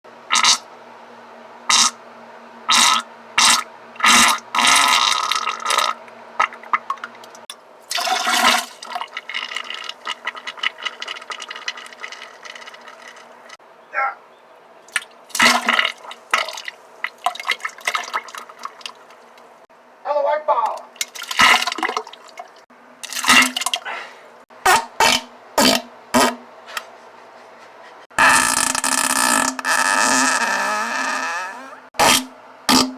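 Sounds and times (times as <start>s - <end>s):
wet sputtering fart sounds: 0.3s - 0.7s, 1.7s - 2.0s, 2.7s - 13.6s, 14.9s - 19.0s, 21.2s - 22.1s, 23.0s - 23.9s, 24.6s - 26.4s, 28.1s - 32.9s.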